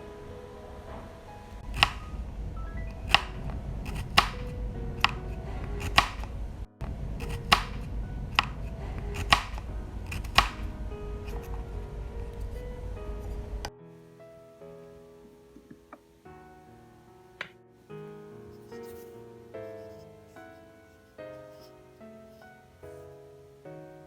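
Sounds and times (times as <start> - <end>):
background music: 0.0 - 24.0
knife chopping on cutting board: 1.7 - 2.1, 3.1 - 5.2, 5.8 - 6.3, 7.2 - 8.6, 9.2 - 10.6.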